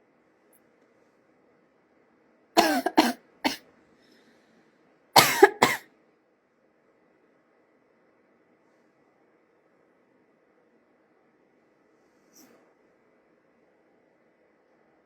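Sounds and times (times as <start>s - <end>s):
person coughing: 2.6s - 3.6s, 5.2s - 5.8s.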